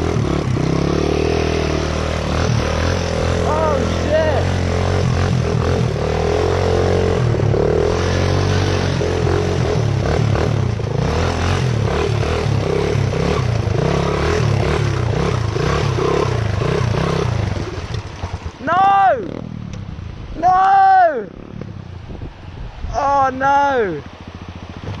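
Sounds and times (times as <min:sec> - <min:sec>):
dirt bike engine running hard: 0:00.0 - 0:22.3, 0:22.9 - 0:25.0
water splashing: 0:13.0 - 0:18.6.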